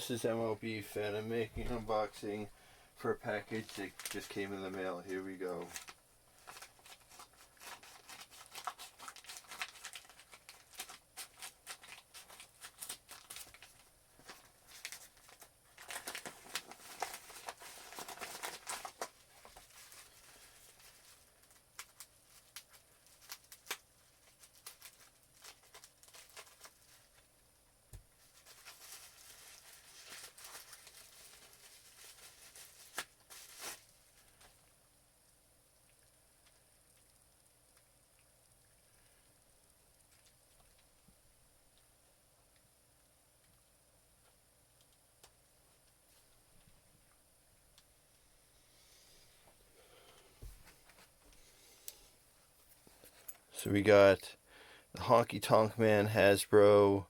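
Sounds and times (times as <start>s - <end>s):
packaging tearing and crinkling: 3.4s - 27.2s, 28.2s - 34.6s.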